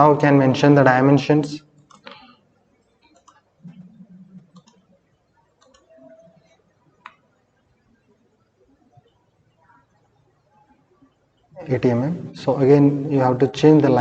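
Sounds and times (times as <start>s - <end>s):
low room noise: 0.0s - 14.0s
computer mouse clicks: 1.8s - 2.3s, 2.9s - 4.9s, 5.5s - 7.2s.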